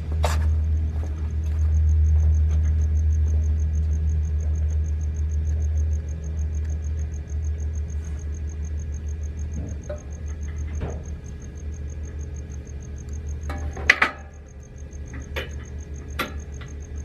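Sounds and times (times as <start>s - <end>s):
welding machine humming: 0.0s - 17.0s.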